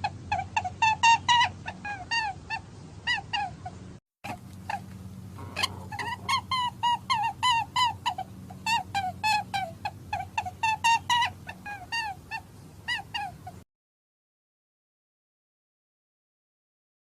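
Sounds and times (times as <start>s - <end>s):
steady low hum: 0.0s - 13.6s
rapid short chirping calls: 4.6s - 13.4s.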